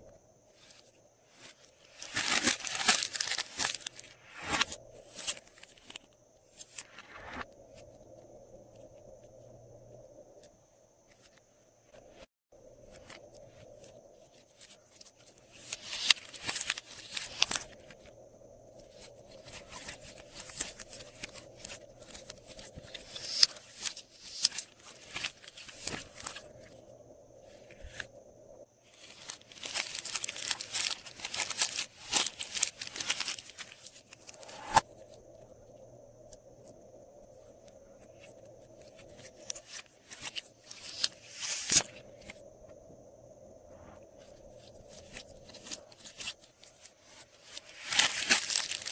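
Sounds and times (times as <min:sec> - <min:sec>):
plastic bags crinkling: 0:01.8 - 0:04.1, 0:15.5 - 0:17.8, 0:28.9 - 0:34.7, 0:47.4 - 0:48.9
slime crackling and popping: 0:29.0 - 0:34.7, 0:47.8 - 0:48.9.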